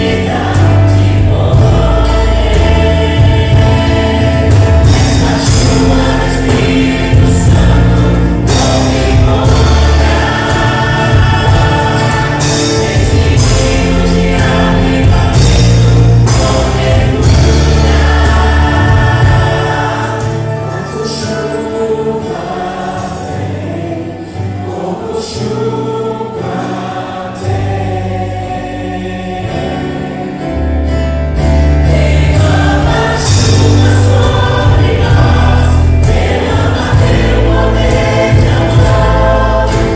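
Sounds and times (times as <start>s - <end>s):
heavy bass music: 0.0s - 20.6s, 30.6s - 39.9s
choir singing praise song: 0.0s - 39.9s.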